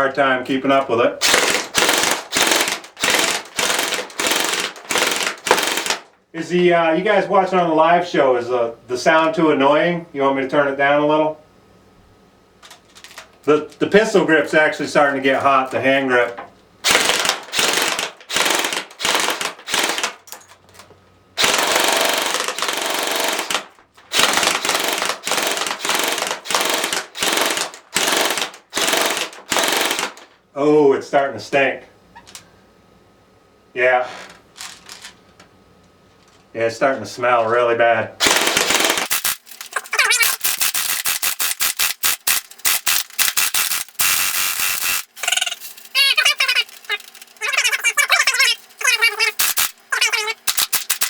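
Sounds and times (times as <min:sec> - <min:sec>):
airsoft gun firing bursts: 0:01.2 - 0:06.1, 0:16.8 - 0:20.2, 0:21.4 - 0:30.2, 0:38.2 - 0:45.2, 0:48.8 - 0:51.0.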